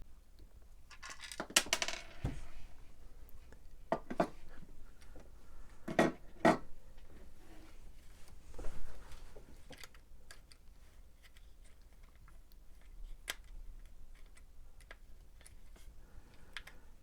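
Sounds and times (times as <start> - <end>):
light clicks of plastic parts: 9.6 - 16.8.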